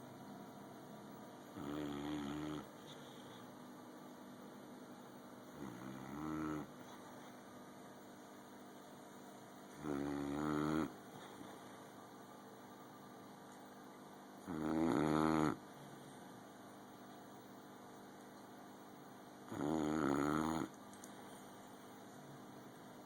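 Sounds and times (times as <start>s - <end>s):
dog snoring: 1.5s - 3.4s, 5.5s - 7.0s, 9.7s - 11.6s, 14.4s - 16.1s, 19.5s - 20.8s.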